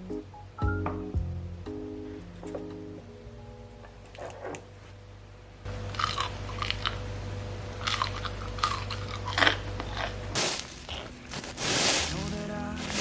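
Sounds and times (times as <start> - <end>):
crunchy biting and chewing: 5.8 - 7.0, 7.8 - 13.0.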